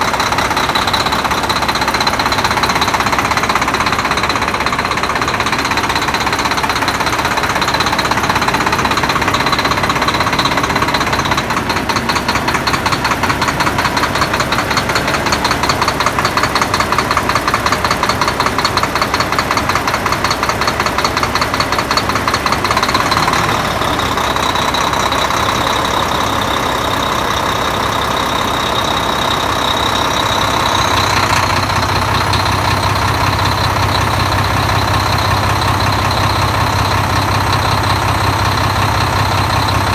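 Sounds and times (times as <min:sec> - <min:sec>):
diesel truck engine cranking: 0:00.0 - 0:39.9.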